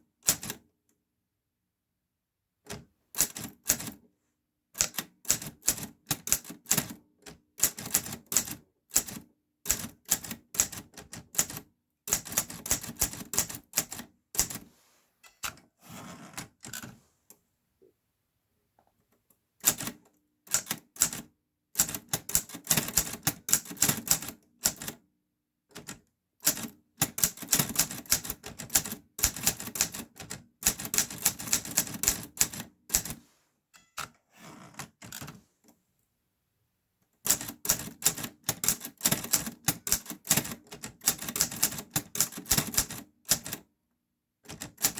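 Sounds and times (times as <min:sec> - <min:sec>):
typewriter keystrokes: 0:21.8 - 0:25.0, 0:25.8 - 0:33.2, 0:37.3 - 0:43.6, 0:44.5 - 0:44.9.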